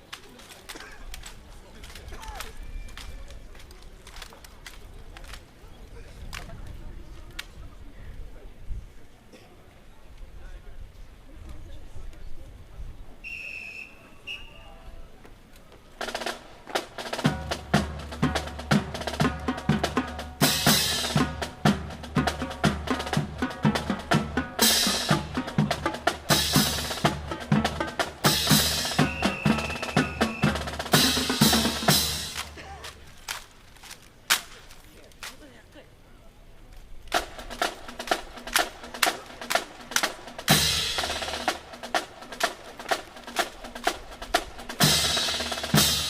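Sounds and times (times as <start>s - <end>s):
snare drum rolls and rimshots: 16.0s - 34.7s, 37.1s - 46.0s.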